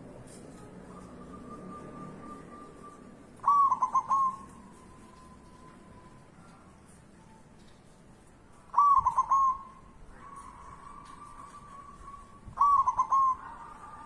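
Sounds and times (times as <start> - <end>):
dove cooing: 0.9 - 4.9, 8.7 - 14.0.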